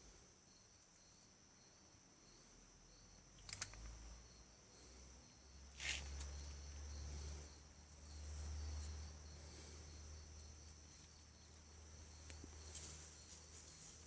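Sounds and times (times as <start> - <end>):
crickets chirring: 0.0 - 14.0
sharp clicks: 3.4 - 4.0
rustling: 5.7 - 7.4, 10.6 - 14.0.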